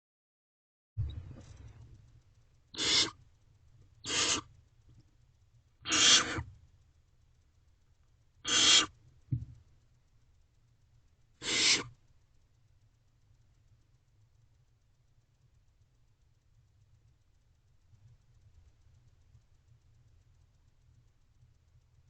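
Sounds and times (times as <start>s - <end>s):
owlets hissing screech calls: 2.8s - 3.2s, 4.0s - 4.5s, 5.8s - 6.5s, 8.4s - 9.0s, 11.4s - 11.9s
low thump: 9.3s - 9.6s.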